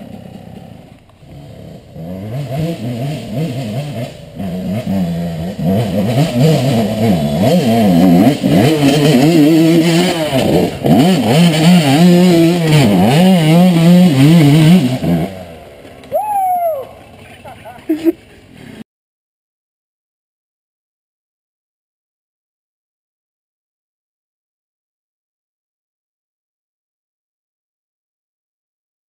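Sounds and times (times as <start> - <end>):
dirt bike engine revving: 0.0 - 18.8.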